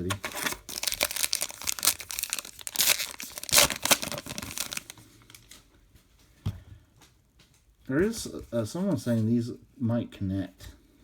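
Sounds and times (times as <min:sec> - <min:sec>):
wrapper tearing and crinkling: 0:00.0 - 0:05.6.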